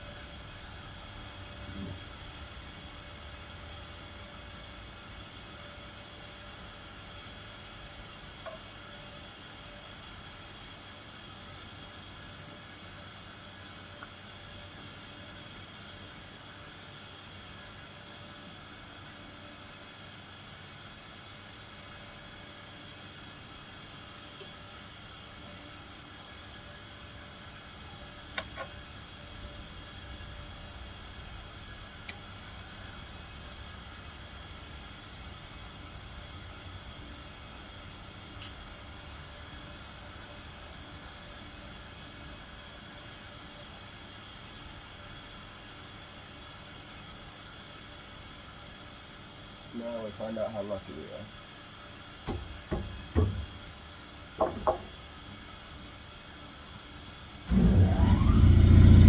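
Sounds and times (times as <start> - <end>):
steady background hiss: 19.8 - 59.0.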